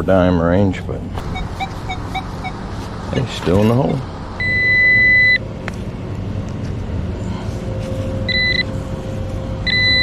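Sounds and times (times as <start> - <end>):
metal detector high tone: 1.3 - 2.6, 3.8 - 5.4, 8.3 - 8.7, 9.6 - 10.0
short high beep: 1.3 - 2.6
metal detector low tone: 3.8 - 5.4, 8.2 - 8.8, 9.6 - 10.0.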